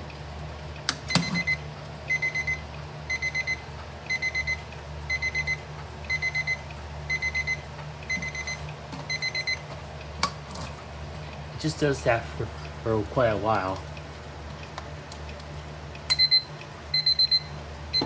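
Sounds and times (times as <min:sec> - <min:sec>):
alarm clock beeping: 0:01.1 - 0:09.6, 0:17.0 - 0:18.0.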